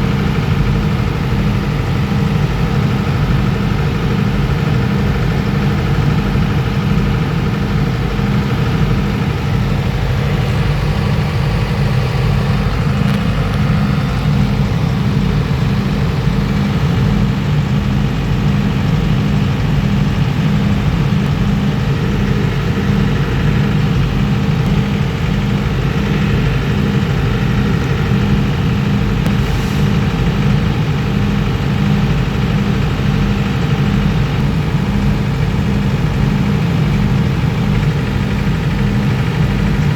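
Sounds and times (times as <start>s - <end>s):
diesel generator engine drone: 0.0s - 39.9s.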